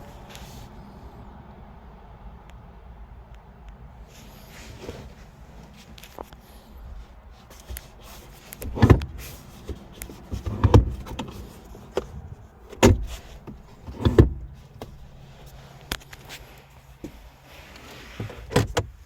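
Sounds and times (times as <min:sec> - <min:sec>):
dull thumps of car body parts: 0:08.5 - 0:15.0, 0:18.2 - 0:19.0.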